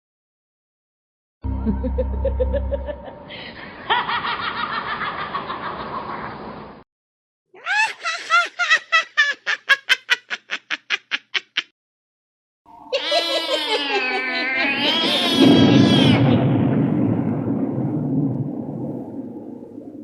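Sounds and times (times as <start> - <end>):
witch cackling: 1.5 - 5.6, 7.6 - 11.6, 12.7 - 16.2
high-pitched cackle: 1.5 - 6.2, 7.6 - 11.7, 12.7 - 16.1.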